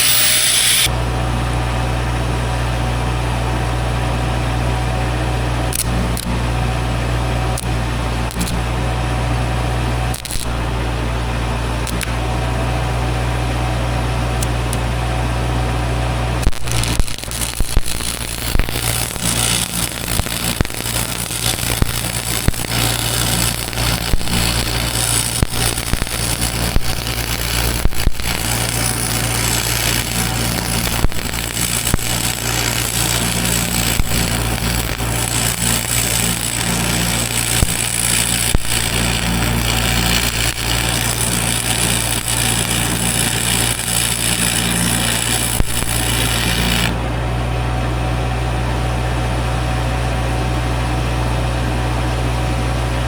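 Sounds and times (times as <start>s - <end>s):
arc welding crackle: 0.0s - 0.9s, 5.5s - 8.8s, 9.6s - 12.5s, 16.3s - 47.0s
engine running: 0.0s - 51.0s.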